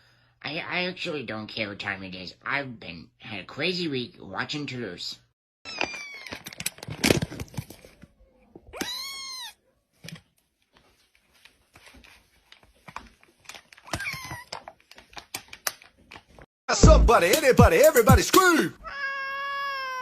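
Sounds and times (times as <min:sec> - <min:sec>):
cat meowing: 0:08.7 - 0:09.8, 0:13.9 - 0:14.6, 0:18.8 - 0:20.0.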